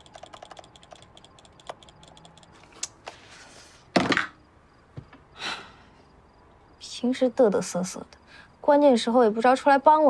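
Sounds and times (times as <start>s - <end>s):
typing on a keyboard: 0.0s - 2.6s.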